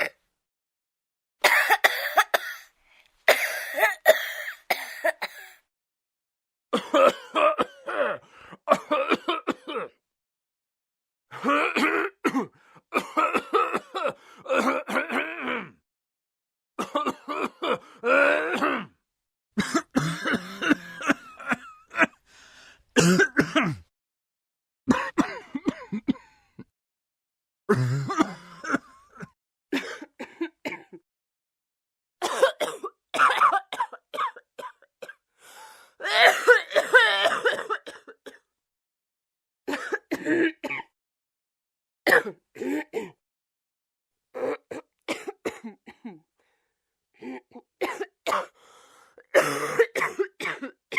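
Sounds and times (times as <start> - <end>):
person coughing: 1.4 - 2.7, 3.3 - 5.6, 6.8 - 10.0, 11.4 - 15.8, 16.8 - 18.9, 19.6 - 22.2, 23.0 - 23.9, 24.9 - 26.7, 27.7 - 31.0, 32.2 - 35.2, 36.0 - 38.5, 39.7 - 41.0, 42.1 - 43.2, 44.4 - 46.2, 47.2 - 48.6, 49.2 - 50.9
throat clearing: 23.0 - 23.9.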